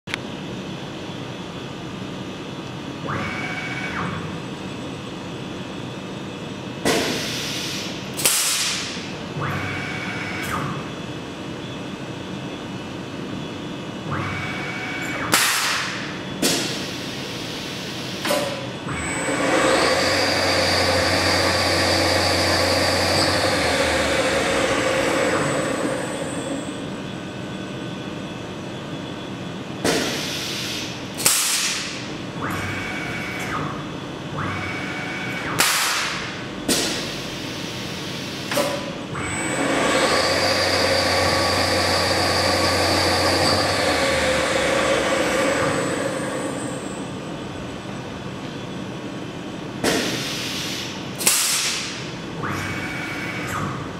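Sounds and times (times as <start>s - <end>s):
mill spindle whine: 0.1s - 8.2s, 8.9s - 31.2s, 31.8s - 51.2s, 52.0s - 53.9s
short sharp air blasts: 7.0s - 8.9s, 30.0s - 32.0s, 49.9s - 52.0s.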